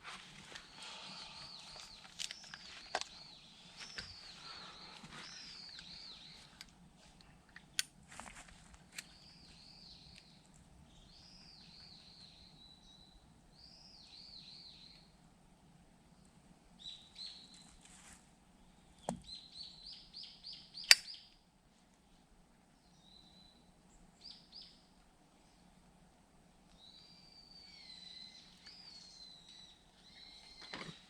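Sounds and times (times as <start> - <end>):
songbird singing: 0.4 - 7.8, 8.9 - 15.2, 16.1 - 17.8, 18.6 - 21.4, 22.8 - 25.8, 26.7 - 31.0
sharp crack: 20.8 - 21.2.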